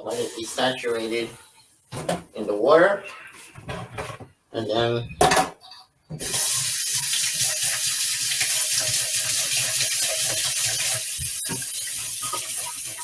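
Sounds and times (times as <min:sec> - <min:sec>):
faucet water running into sink: 0:06.2 - 0:13.0.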